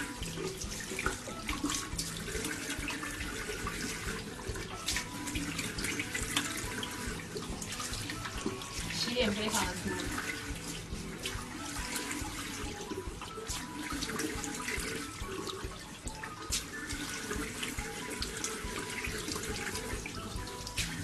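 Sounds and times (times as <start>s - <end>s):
splashing as hands rinse face: 0.0s - 21.0s
water running from sink tap: 0.0s - 21.0s.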